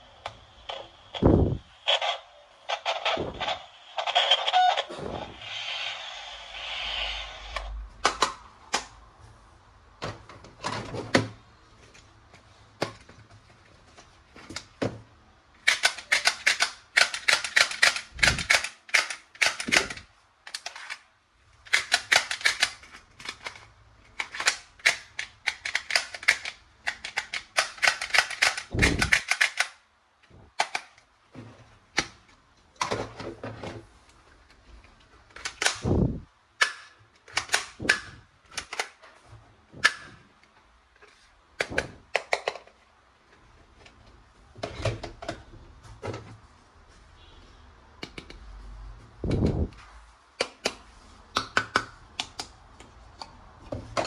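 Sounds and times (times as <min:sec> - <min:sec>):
toy guns firing clicking bursts: 0:15.7 - 0:20.0, 0:24.5 - 0:29.8.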